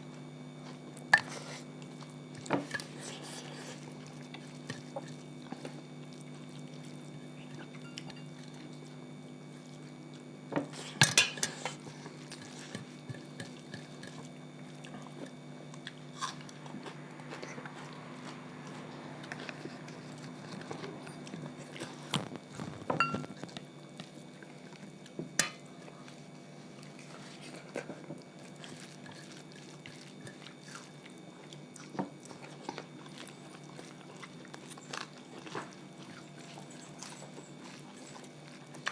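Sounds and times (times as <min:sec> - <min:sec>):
people chewing: 0:00.5 - 0:38.9
plates and utensils clinking: 0:10.6 - 0:14.2, 0:23.0 - 0:23.4, 0:25.4 - 0:25.6.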